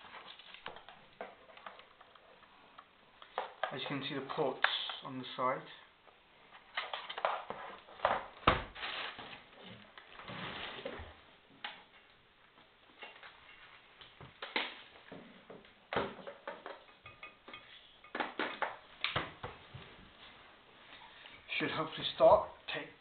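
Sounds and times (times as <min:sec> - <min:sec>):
rustling: 0:06.4 - 0:11.3.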